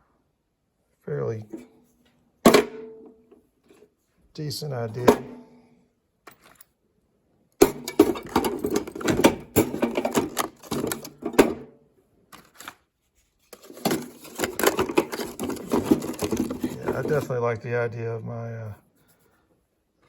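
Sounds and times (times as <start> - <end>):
hand tools clattering: 7.6 - 11.6, 13.6 - 17.3.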